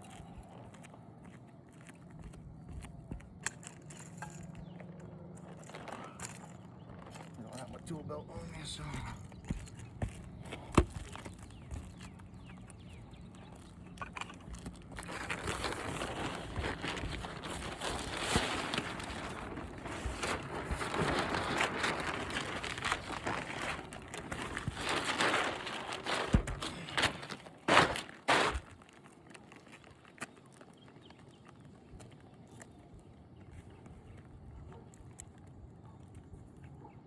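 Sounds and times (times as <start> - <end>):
scuffing footsteps: 0.0 - 7.8, 8.4 - 31.3
plastic tarp crinkling: 5.3 - 9.9, 10.5 - 31.2.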